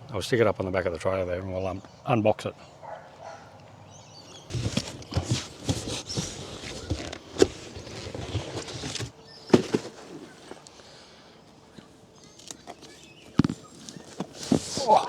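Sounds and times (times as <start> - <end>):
scuffing and rustling of box: 4.3 - 10.7, 12.2 - 15.0.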